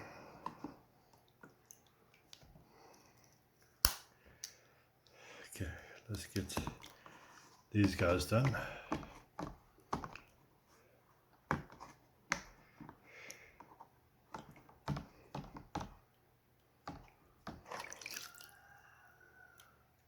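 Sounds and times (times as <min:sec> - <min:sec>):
water dripping and splashing: 0:05.7 - 0:08.7, 0:16.9 - 0:18.5.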